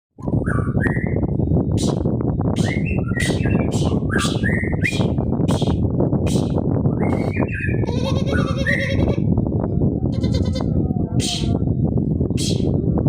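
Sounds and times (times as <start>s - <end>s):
loud low rumbling noise: 0.2s - 13.0s
bird chirping and whistling: 0.3s - 9.0s, 12.4s - 12.8s.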